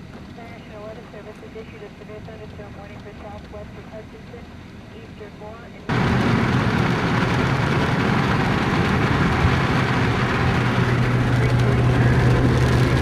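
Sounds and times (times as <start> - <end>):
low engine hum: 0.0 - 13.0
road or wind rushing: 5.9 - 13.0.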